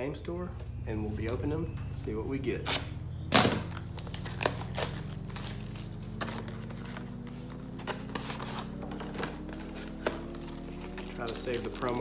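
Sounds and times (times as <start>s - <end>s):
low hum: 0.0s - 12.0s
cardboard and plastic rustling: 3.4s - 12.0s.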